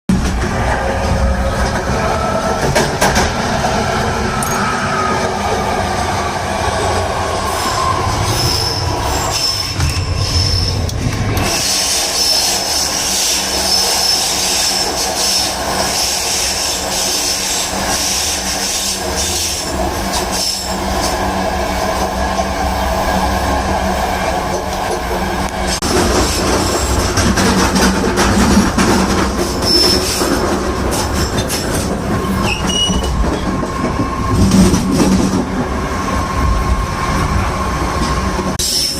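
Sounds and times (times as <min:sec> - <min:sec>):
train wheels clattering on rails: 0:00.1 - 0:06.2, 0:24.3 - 0:38.9
high-pitched train brake squeal: 0:04.3 - 0:05.2, 0:07.5 - 0:10.9, 0:11.5 - 0:20.8, 0:32.4 - 0:33.2, 0:38.6 - 0:38.9.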